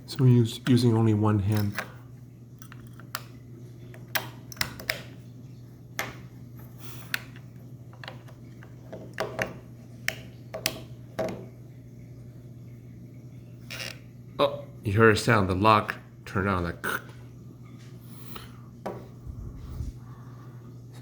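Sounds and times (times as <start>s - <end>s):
plastic clicks and knocks: 4.0s - 5.2s, 8.0s - 11.5s
low hum: 17.2s - 21.0s.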